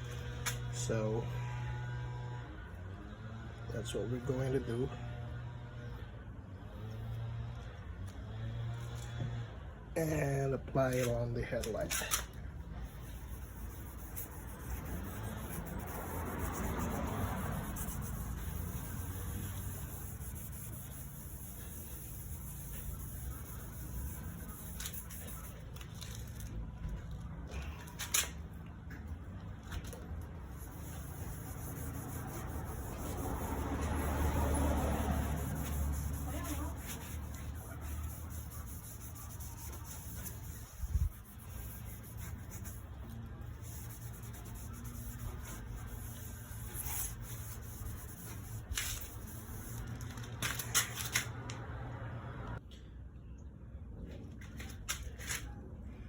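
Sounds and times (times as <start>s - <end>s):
cleaning pad scrubbing plastic: 30.6s - 43.0s.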